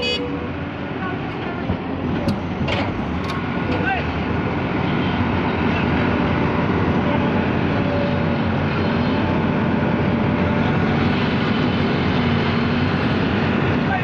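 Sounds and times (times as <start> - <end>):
heavy machinery engine running: 0.0 - 14.0.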